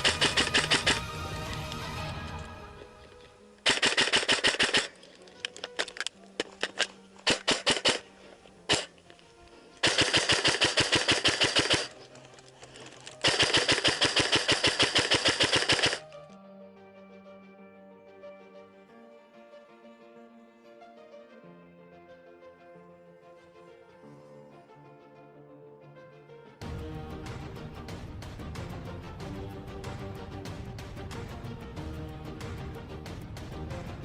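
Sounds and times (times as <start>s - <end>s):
airsoft rifle firing: 0.0s - 1.1s, 3.6s - 9.0s, 9.8s - 16.2s.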